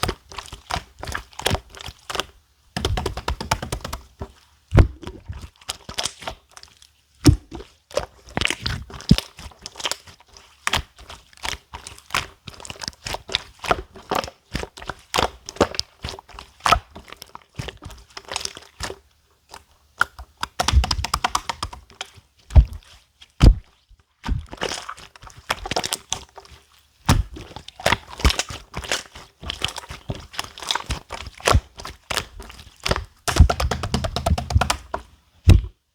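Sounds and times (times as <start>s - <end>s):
heavier thuds: 4.8s - 5.2s, 35.5s - 35.7s
slime clicking and popping: 20.0s - 21.9s, 32.2s - 35.7s.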